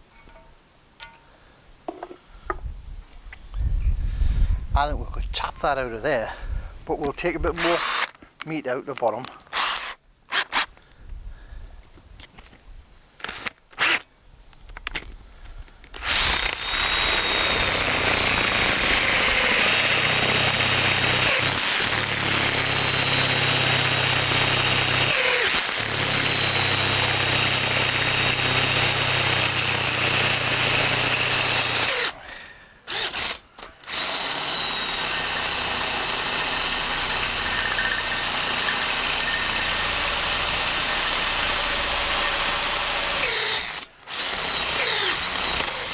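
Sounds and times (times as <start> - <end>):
power drill boring metal: 7.5 - 8.2, 9.5 - 10.7, 13.2 - 14.1, 15.9 - 45.9.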